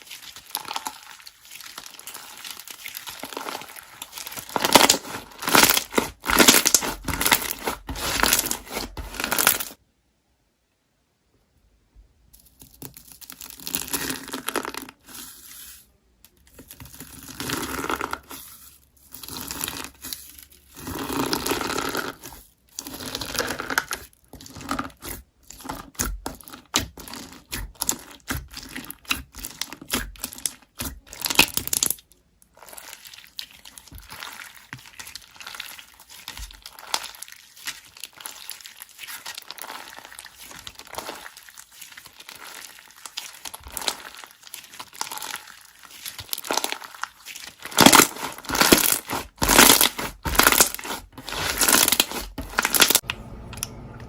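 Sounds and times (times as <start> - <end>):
slime crackling and popping: 0.0 - 9.8, 19.2 - 32.0, 32.6 - 53.0.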